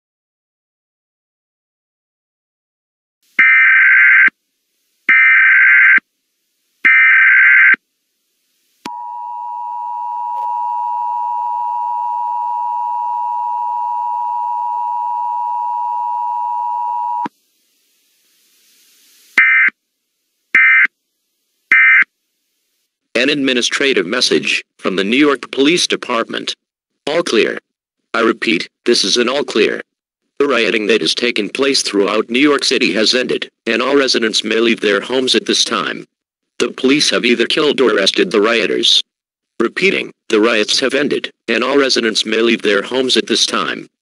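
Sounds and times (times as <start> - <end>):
chirping data bursts: 3.4 - 4.3, 5.1 - 6.0, 6.8 - 7.8, 19.4 - 19.7, 20.6 - 20.9, 21.7 - 22.1
digital data bursts screeching: 3.4 - 4.3, 5.1 - 6.0, 6.8 - 7.8, 19.4 - 19.7
two-tone attention signal: 8.9 - 17.3.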